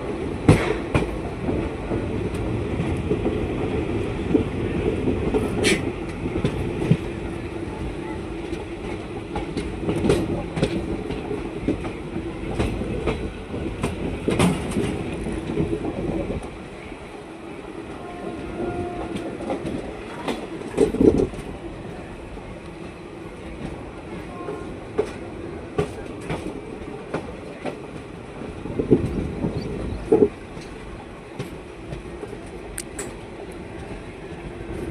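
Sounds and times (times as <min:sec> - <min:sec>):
passenger train rumbling: 0:00.0 - 0:34.9
wheels clacking over rail joints: 0:08.3 - 0:16.5.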